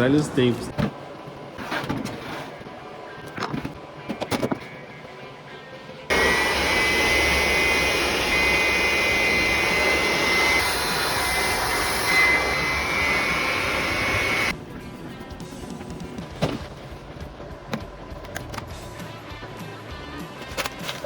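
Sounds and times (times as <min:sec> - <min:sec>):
blower rushing air with whine: 0:06.1 - 0:14.8.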